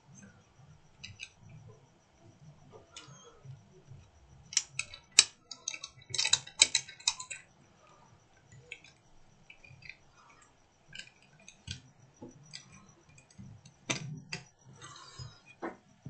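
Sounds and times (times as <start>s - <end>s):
metal tools tapping circuit board: 0.1s - 16.0s.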